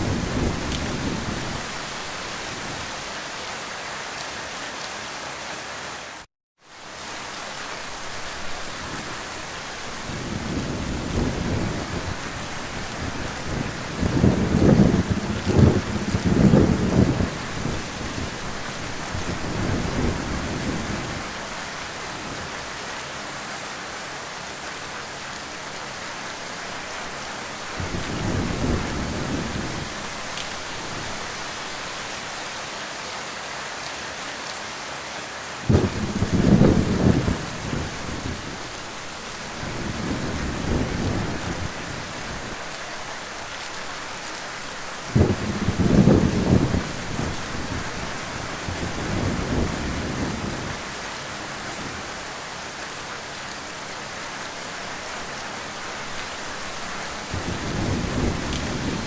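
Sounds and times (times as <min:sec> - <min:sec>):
thunder rumbling: 0:00.0 - 0:02.8, 0:10.0 - 0:21.4, 0:27.7 - 0:31.4, 0:35.7 - 0:42.6, 0:45.0 - 0:50.9, 0:57.3 - 0:59.0
heavy rain hissing: 0:00.0 - 0:59.0.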